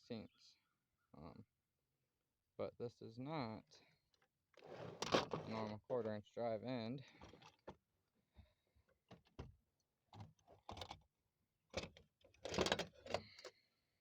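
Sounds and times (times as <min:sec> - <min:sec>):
metal sockets clicking and clattering: 0:11.8 - 0:13.4.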